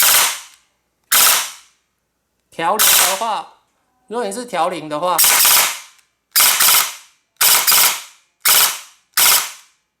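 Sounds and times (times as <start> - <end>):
airsoft gun firing bursts: 0.0 - 0.5, 1.1 - 1.6, 2.8 - 3.2, 5.2 - 9.7.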